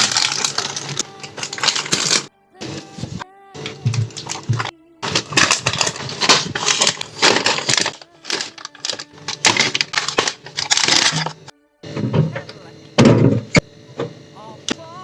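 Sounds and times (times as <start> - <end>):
containers clicking and knocking: 0.0 - 2.2, 3.9 - 11.5
plastic packaging crinkling: 0.0 - 11.5.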